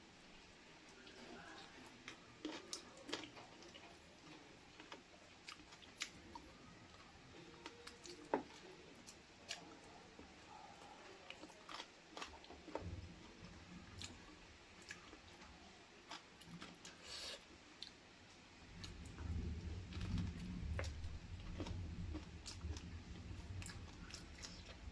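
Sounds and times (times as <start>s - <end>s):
person chewing wet crunches: 1.1s - 6.5s, 11.2s - 18.0s, 18.8s - 24.9s.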